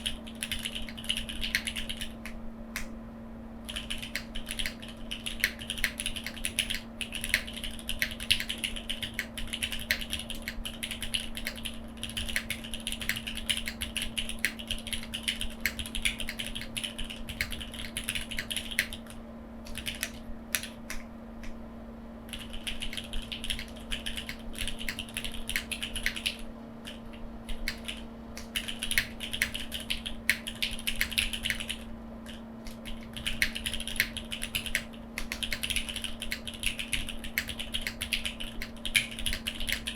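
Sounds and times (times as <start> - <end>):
mechanical keyboard typing: 0.0 - 2.3, 3.7 - 20.8, 22.3 - 39.9
faint steady hum: 0.0 - 39.9.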